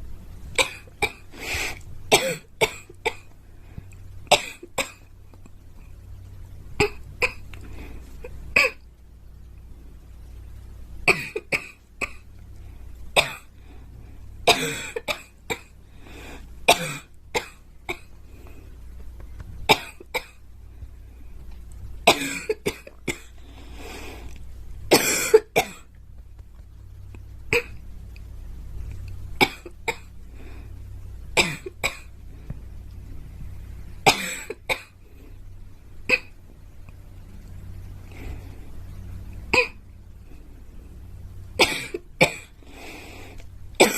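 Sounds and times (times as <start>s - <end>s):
girl coughing: 2.1s - 2.8s, 24.9s - 25.8s.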